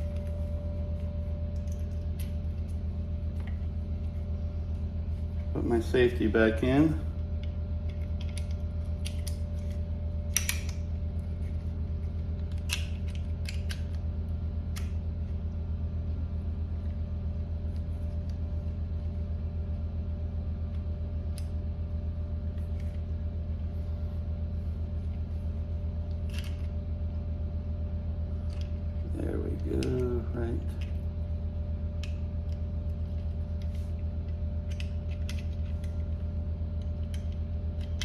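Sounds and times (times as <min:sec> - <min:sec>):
low hum: 0:00.0 - 0:38.0
metal gun parts clicking: 0:10.3 - 0:10.8.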